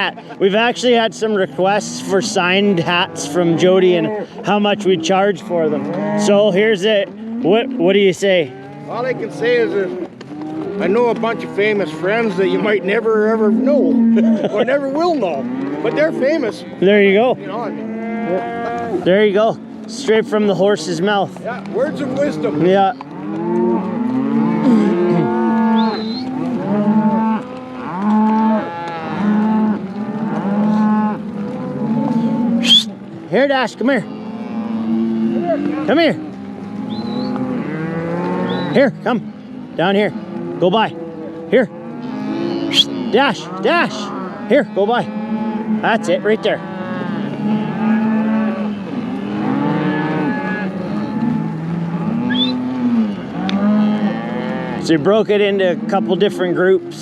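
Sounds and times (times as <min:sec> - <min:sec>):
cattle mooing: 0:00.0 - 0:57.0
high rising whistle: 0:32.6 - 0:32.9, 0:52.3 - 0:52.6.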